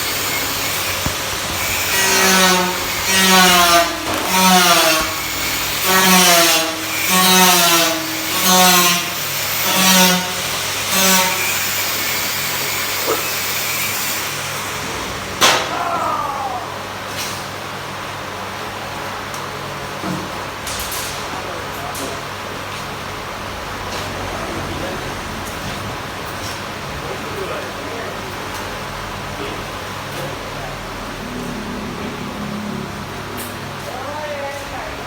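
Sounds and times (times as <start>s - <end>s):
hand saw squealing strokes: 0.0s - 14.6s
steady background noise: 0.0s - 35.0s.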